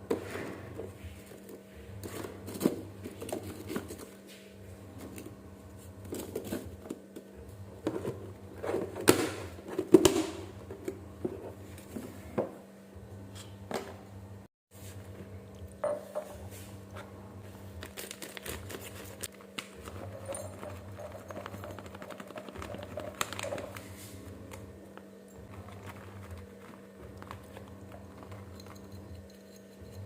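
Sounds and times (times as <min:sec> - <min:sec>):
objects and utensils clattering: 0:00.0 - 0:04.2, 0:05.9 - 0:12.6, 0:17.8 - 0:30.0
steady low hum: 0:00.0 - 0:30.0.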